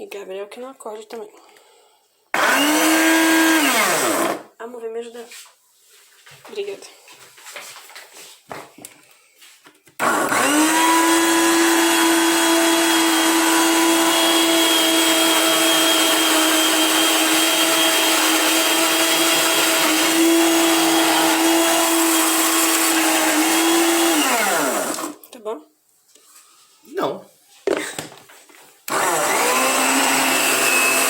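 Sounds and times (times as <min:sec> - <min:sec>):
kitchen blender running: 0:02.4 - 0:04.5, 0:10.0 - 0:25.2, 0:28.9 - 0:31.0.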